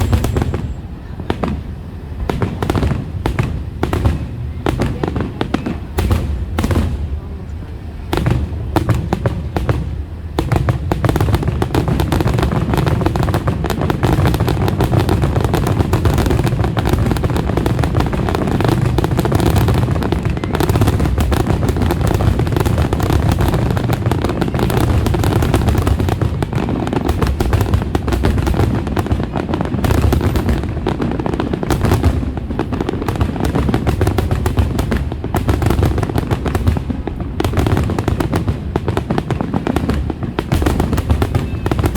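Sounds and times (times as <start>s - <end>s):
fireworks bursting: 0.0s - 41.9s.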